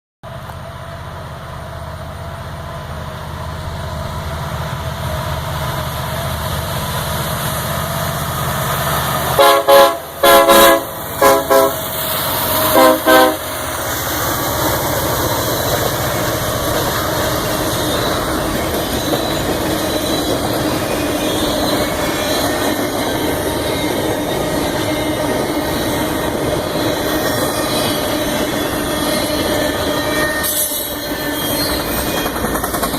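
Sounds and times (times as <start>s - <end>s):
diesel locomotive rumble: 0.2s - 32.9s
train rolling noise: 0.2s - 32.9s
train air horn blasts: 9.3s - 13.7s.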